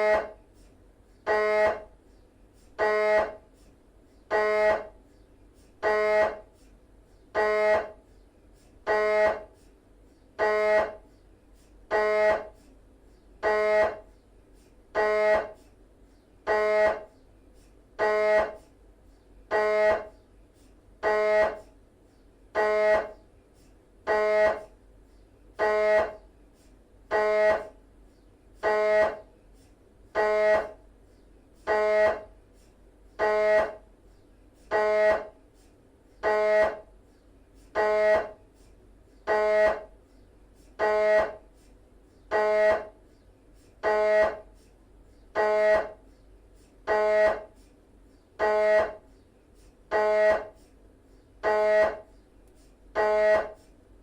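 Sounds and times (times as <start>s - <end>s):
mri scanner buzzing pulses: 0.0s - 0.4s, 1.2s - 2.0s, 2.8s - 3.5s, 4.2s - 5.1s, 5.8s - 6.5s, 7.3s - 8.1s, 8.8s - 9.6s, 10.3s - 11.2s, 13.4s - 14.2s, 14.9s - 15.7s, 16.4s - 17.2s, 18.0s - 18.7s, 19.5s - 20.2s, 21.0s - 21.8s, 22.5s - 23.3s, 24.0s - 24.8s, 25.6s - 26.3s, 27.1s - 27.8s, 28.6s - 29.3s, 30.1s - 30.9s, 31.6s - 32.4s, 33.1s - 33.9s, 34.7s - 35.4s, 36.2s - 37.0s, 37.7s - 38.4s, 39.0s - 40.0s, 40.8s - 41.5s, 42.3s - 43.0s, 43.8s - 44.6s, 45.2s - 46.1s, 46.8s - 47.6s, 48.4s - 49.1s, 49.9s - 50.6s, 51.3s - 52.1s, 52.9s - 53.7s.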